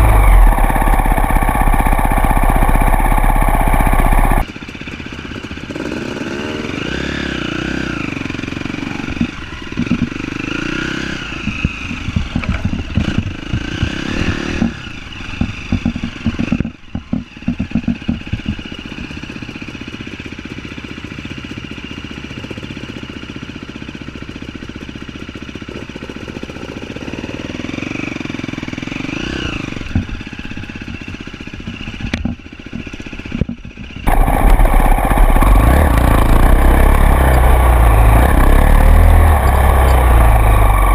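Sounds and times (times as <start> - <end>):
heavy rumble: 0.0 - 4.4, 34.0 - 40.9
off-road vehicle engine revving: 0.0 - 4.4, 5.7 - 12.1, 12.7 - 16.6, 26.9 - 30.0, 34.0 - 40.9.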